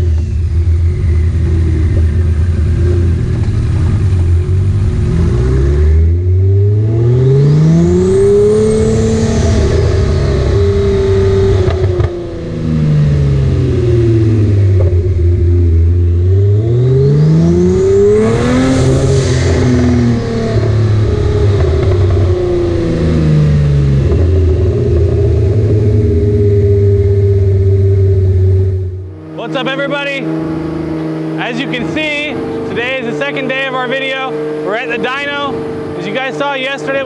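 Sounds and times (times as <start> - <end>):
car engine revving: 0.0 - 37.0
turbo whine: 0.0 - 37.0.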